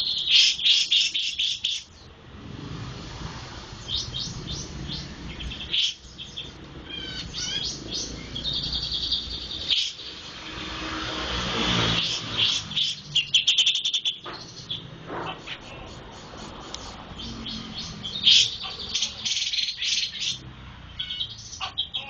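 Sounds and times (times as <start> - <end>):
songbird chirping and trilling: 0.0 - 2.2, 3.7 - 10.6, 11.8 - 22.0.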